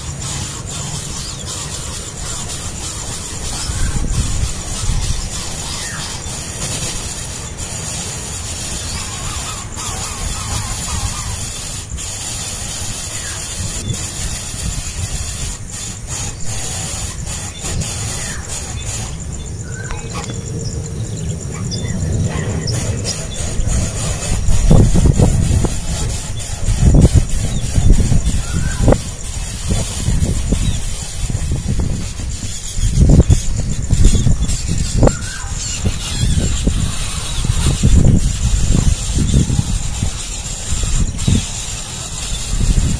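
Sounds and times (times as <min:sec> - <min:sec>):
low rumble and hiss: 0:00.0 - 0:42.2
nestling birds begging cries: 0:00.0 - 0:42.9.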